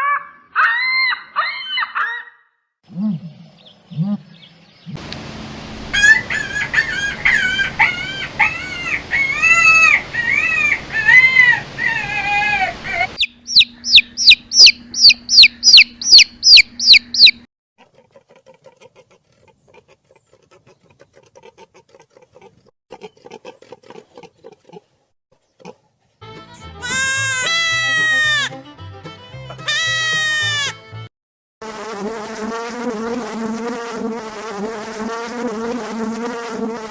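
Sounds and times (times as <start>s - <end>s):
chickens clucking: 5.0s - 13.2s
high sharp falling calls: 5.0s - 13.2s
noisy yard: 5.0s - 28.2s.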